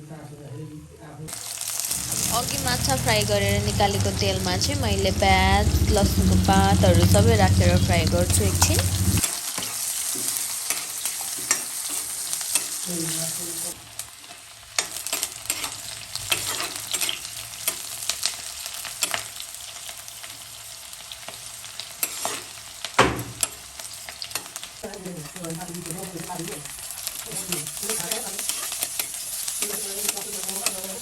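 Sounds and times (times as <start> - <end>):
onions sizzling in hot oil: 1.3 - 31.0
spatula scraping and knocking pan: 8.2 - 12.8.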